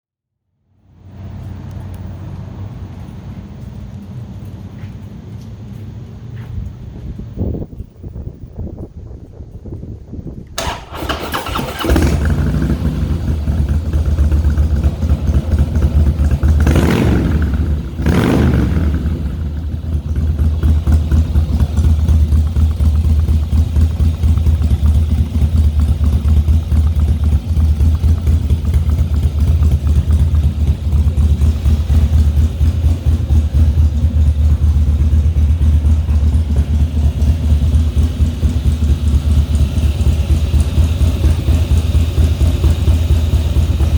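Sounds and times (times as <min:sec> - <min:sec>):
motorcycle engine starting and idling: 0:00.8 - 0:43.9
motorcycle engine revving: 0:10.6 - 0:43.9.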